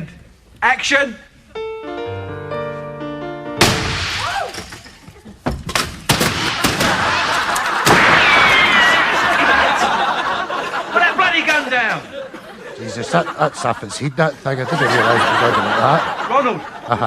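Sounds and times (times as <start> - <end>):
crash with breaking: 3.6 - 5.0, 5.8 - 9.2.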